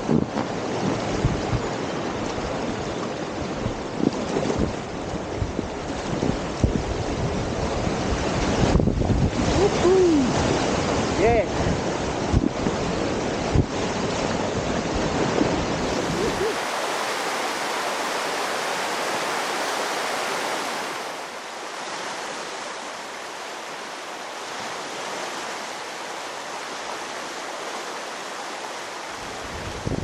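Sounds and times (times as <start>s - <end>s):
creek rushing over rocks: 14.4s - 30.0s.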